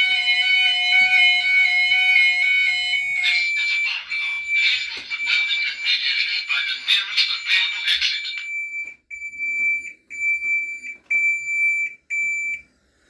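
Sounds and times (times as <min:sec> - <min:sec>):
fire alarm sounders: 0:00.0 - 0:12.6.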